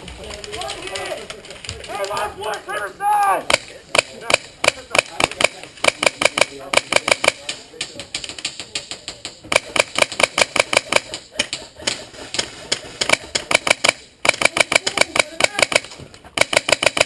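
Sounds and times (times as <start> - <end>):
rapid airsoft gunfire: 3.5 - 17.0.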